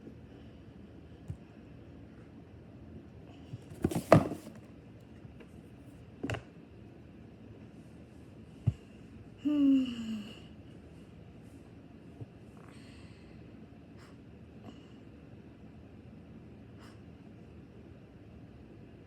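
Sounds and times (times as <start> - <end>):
plastic bottle knocks and taps: 3.8 - 4.5.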